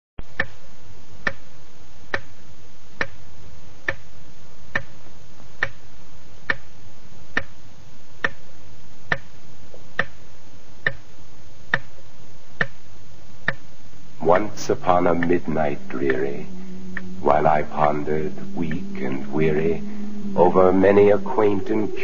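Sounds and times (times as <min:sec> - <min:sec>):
steady hiss: 0:00.2 - 0:22.0
clock ticking: 0:00.3 - 0:00.6, 0:01.2 - 0:01.5, 0:02.1 - 0:02.4, 0:03.0 - 0:03.2, 0:03.8 - 0:04.1, 0:04.7 - 0:05.0, 0:06.4 - 0:06.7, 0:07.3 - 0:07.6, 0:08.2 - 0:08.4, 0:09.1 - 0:09.3, 0:10.0 - 0:10.2, 0:11.7 - 0:11.9, 0:12.6 - 0:12.8, 0:13.4 - 0:13.6, 0:14.3 - 0:22.0.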